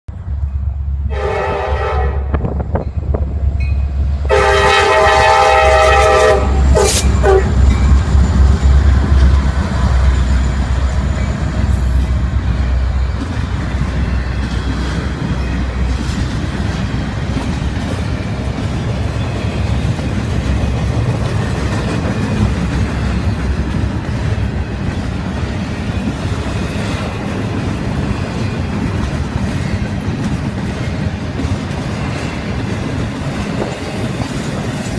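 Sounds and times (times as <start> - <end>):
locomotive air horn blasts: 1.1 - 2.5, 4.3 - 7.7
train wheels clacking on rails: 4.8 - 34.9.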